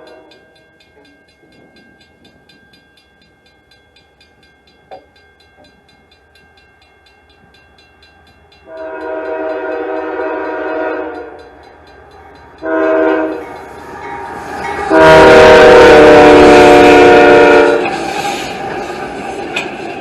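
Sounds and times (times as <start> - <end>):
train air horn blasts: 0.0 - 0.5, 8.7 - 11.5, 12.6 - 13.6, 14.6 - 18.5
train rumbling on rails: 0.0 - 20.0.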